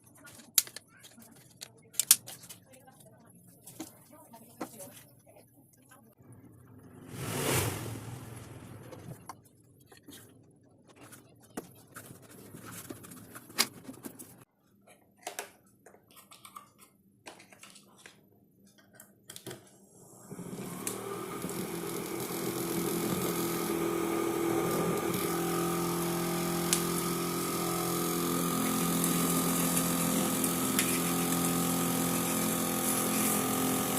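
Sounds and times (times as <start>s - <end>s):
small motor humming: 20.2s - 33.9s.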